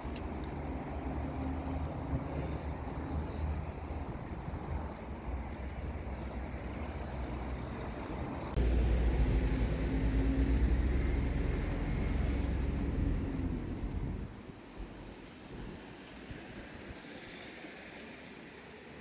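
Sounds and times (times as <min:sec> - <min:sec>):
vehicle rumbling by: 0:00.6 - 0:14.9.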